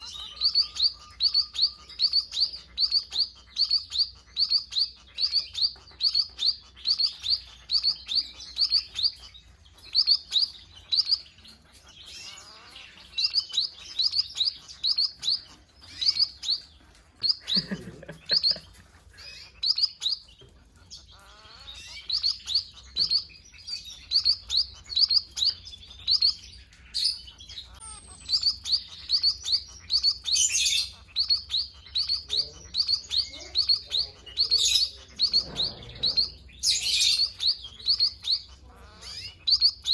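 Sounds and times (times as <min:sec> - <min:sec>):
bird high chirps: 0:00.0 - 0:39.9.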